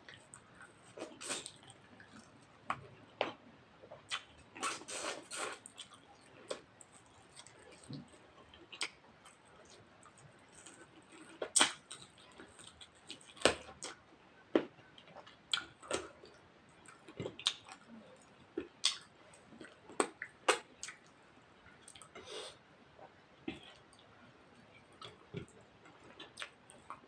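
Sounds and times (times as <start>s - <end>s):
mouth smacks and chewing: 4.0s - 16.1s.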